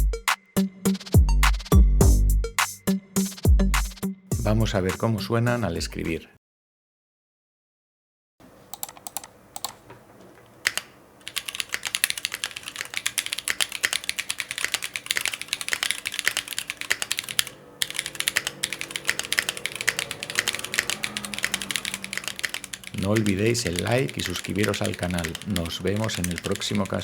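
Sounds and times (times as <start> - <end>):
mechanical keyboard typing: 8.7 - 9.8, 10.6 - 27.0.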